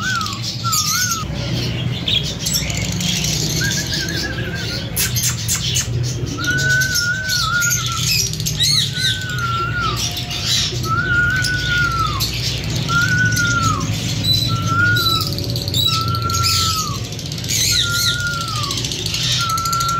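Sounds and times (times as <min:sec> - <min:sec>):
lovebirds chirping and squawking: 0:00.0 - 0:19.9
long whistle-like bird call: 0:06.4 - 0:17.0, 0:17.7 - 0:19.9.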